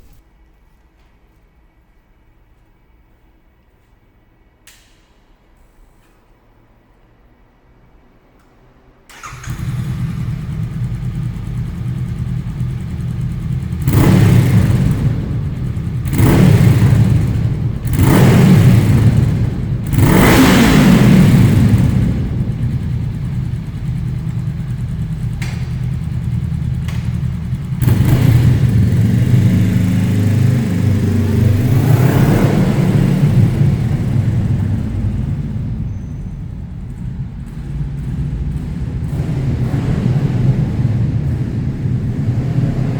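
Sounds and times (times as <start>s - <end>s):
motorcycle engine revving: 9.1s - 42.9s.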